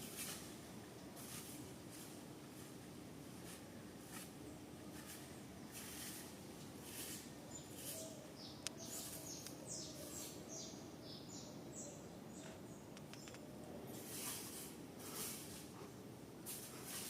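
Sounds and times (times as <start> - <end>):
faint background hiss: 0.0 - 17.0
small bird chirping: 7.1 - 13.5.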